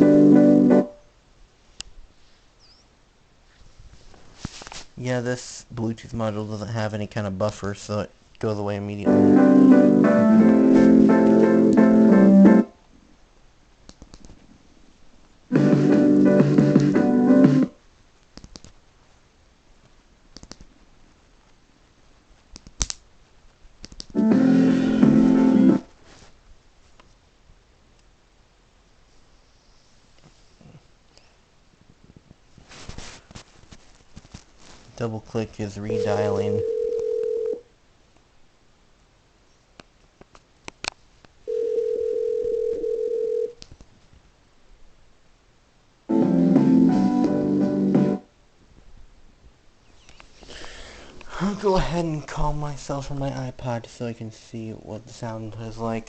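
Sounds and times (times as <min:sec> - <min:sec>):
piano music through small speakers: 0:00.0 - 0:01.0, 0:09.0 - 0:12.8, 0:15.5 - 0:17.8, 0:24.2 - 0:25.9, 0:46.1 - 0:48.3
small clicks: 0:13.9 - 0:14.4, 0:18.3 - 0:18.8, 0:20.3 - 0:20.7, 0:23.8 - 0:24.2
telephone ringback tone: 0:35.9 - 0:37.6, 0:41.5 - 0:43.6.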